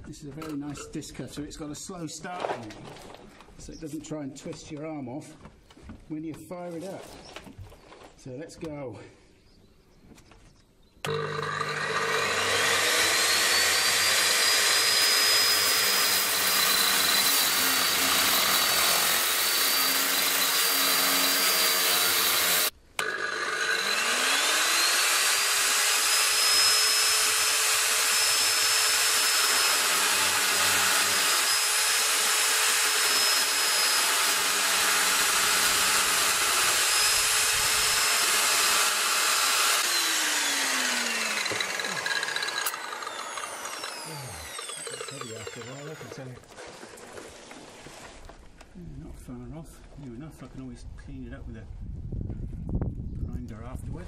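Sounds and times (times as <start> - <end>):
disc cutter whining: 11.1 - 26.8, 38.2 - 46.3.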